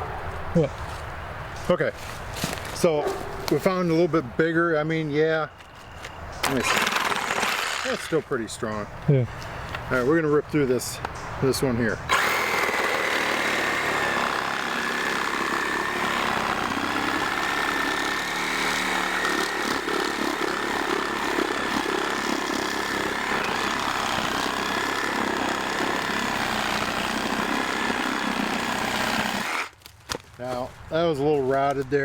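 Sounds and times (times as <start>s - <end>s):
reciprocating saw cutting wood: 6.4s - 8.3s, 12.1s - 29.8s.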